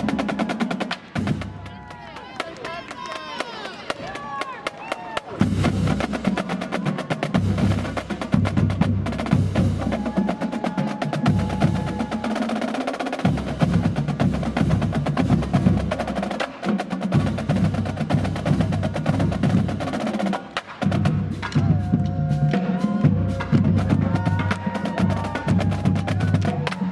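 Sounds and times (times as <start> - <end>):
pounding bass drums: 5.4 - 10.2, 20.8 - 26.9.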